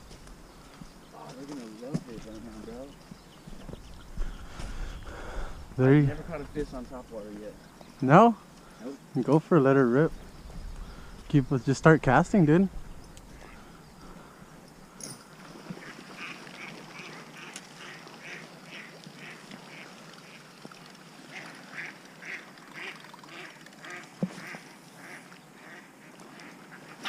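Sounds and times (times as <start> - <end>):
duck quacking: 21.3 - 25.9.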